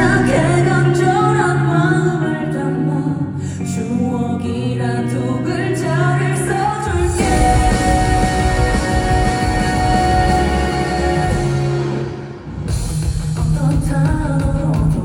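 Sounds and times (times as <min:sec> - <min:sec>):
held chords: 0:00.0 - 0:03.1, 0:05.5 - 0:12.9
woman singing wordless melody: 0:00.0 - 0:11.8
fuller band backing: 0:00.0 - 0:15.0.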